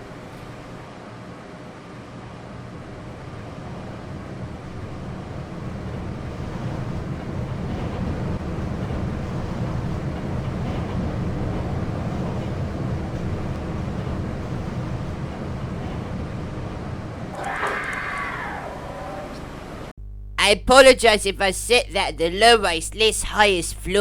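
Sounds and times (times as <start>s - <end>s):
elevator low rumble: 0.0s - 24.0s
rushing air: 17.1s - 19.9s.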